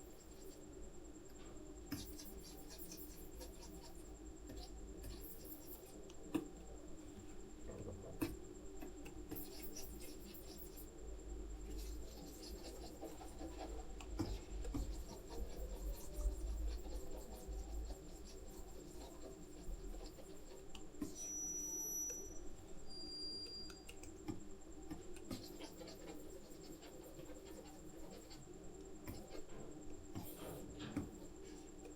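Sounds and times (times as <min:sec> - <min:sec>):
stylus scratching on tablet: 0:00.0 - 0:00.7, 0:01.9 - 0:06.0, 0:09.3 - 0:10.9, 0:11.6 - 0:22.4, 0:23.5 - 0:31.9
thin high whine: 0:11.7 - 0:24.1.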